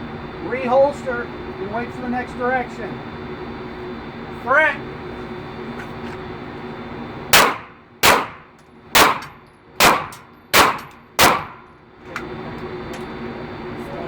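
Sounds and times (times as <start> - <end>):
handgun shots: 7.4 - 11.6.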